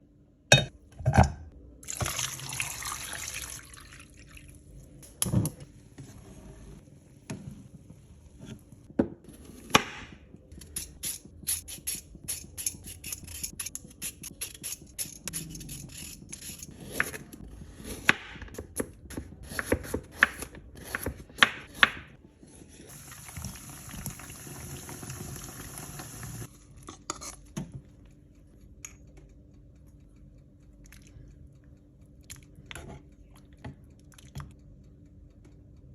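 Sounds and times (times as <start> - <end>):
water running: 1.8 - 4.9, 22.9 - 26.5.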